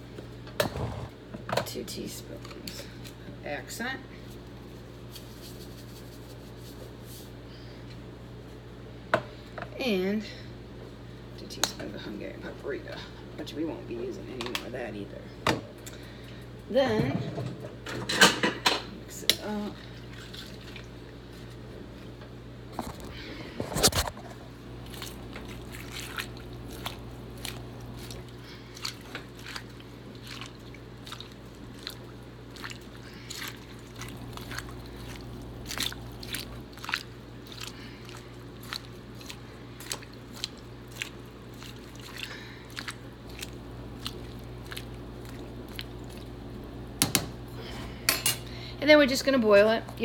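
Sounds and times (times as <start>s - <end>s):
steady low hum: 0.0s - 50.0s
wet squishes and crunches: 22.8s - 46.9s.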